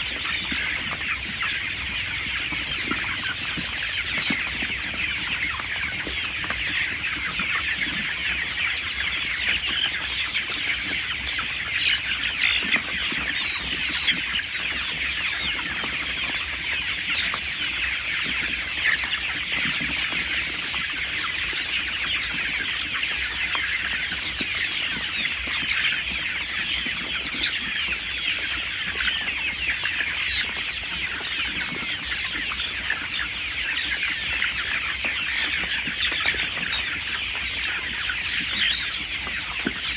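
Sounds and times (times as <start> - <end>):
chicks peeping and cheeping: 0.0 - 39.9.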